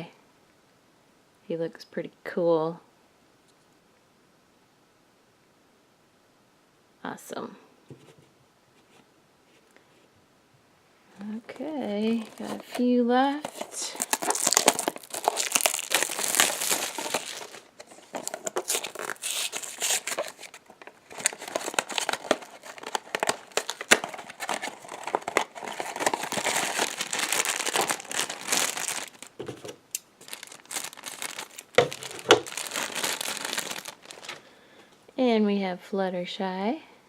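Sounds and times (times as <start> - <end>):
plastic and cardboard crinkling: 11.2 - 34.5.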